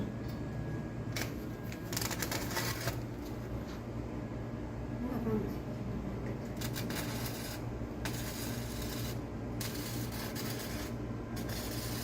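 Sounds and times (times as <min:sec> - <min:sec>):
steady low hum: 0:00.0 - 0:12.0
arc welding crackling hiss: 0:01.2 - 0:03.1, 0:06.6 - 0:12.0.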